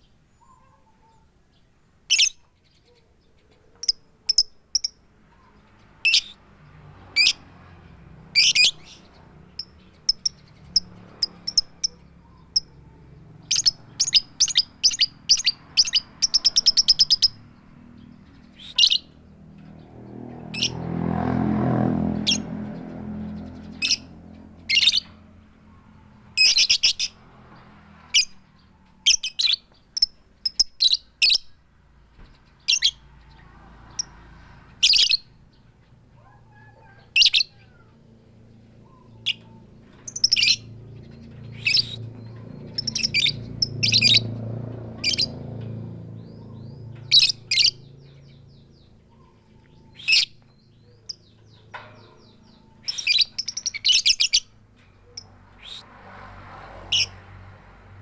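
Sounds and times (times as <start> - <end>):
lovebird sharp calls: 2.1 - 2.4, 8.4 - 17.4, 18.5 - 19.2, 24.7 - 25.2, 26.4 - 27.2, 38.8 - 40.7, 41.5 - 44.3, 45.0 - 45.4, 46.6 - 47.9, 52.2 - 54.5.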